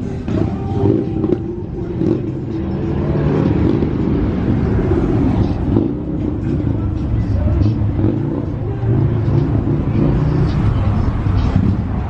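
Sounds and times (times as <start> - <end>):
car engine rumbling: 0.0 - 12.0.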